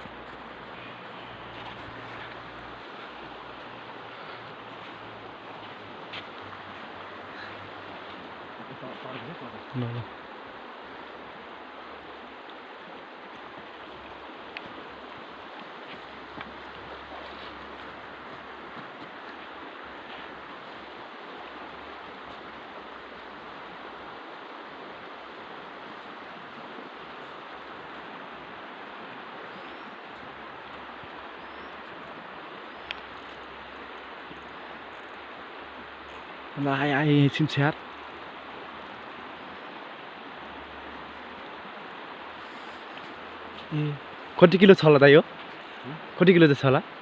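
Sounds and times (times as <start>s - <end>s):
river water rushing: 0.0s - 47.0s
faint clicks: 32.8s - 35.3s.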